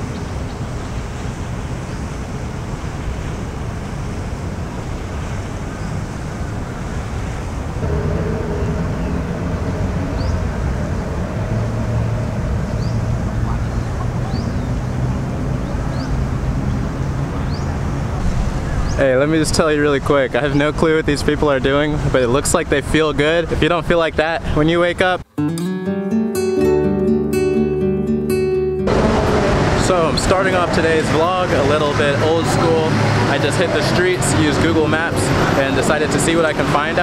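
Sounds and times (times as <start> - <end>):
wind noise on microphone: 0.0 - 24.6
city traffic rumble: 0.0 - 25.3, 28.3 - 37.0
low hum: 7.7 - 19.8.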